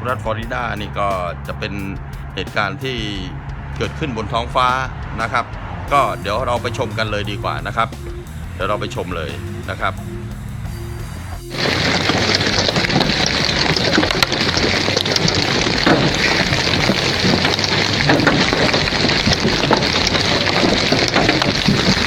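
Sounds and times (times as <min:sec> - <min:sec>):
hailstones pelting down: 0:11.5 - 0:22.0.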